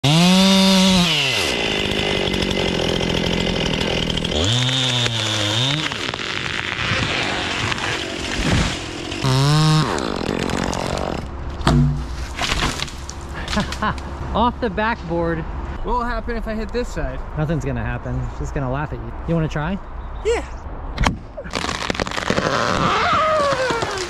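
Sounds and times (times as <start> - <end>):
chainsaw engine revving: 0.0 - 11.3.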